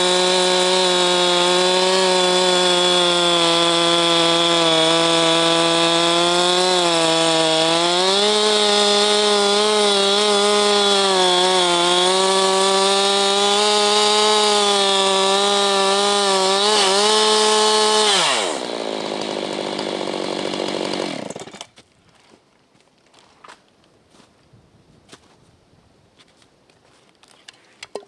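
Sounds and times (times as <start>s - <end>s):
chainsaw running: 0.0s - 21.7s.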